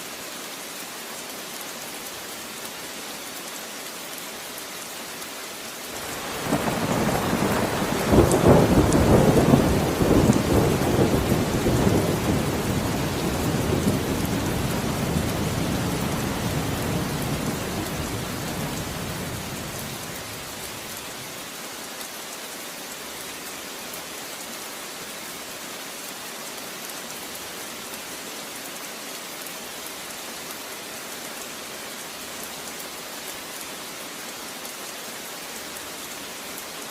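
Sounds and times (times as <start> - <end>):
steady rain: 0.0 - 36.9
thunder rumbling: 6.0 - 20.6.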